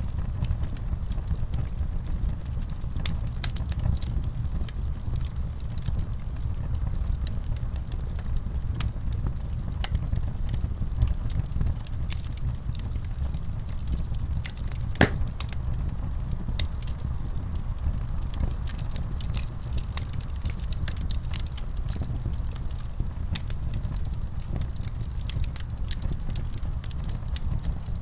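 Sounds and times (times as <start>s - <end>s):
wood fire crackling: 13.1s - 17.2s, 18.3s - 27.7s.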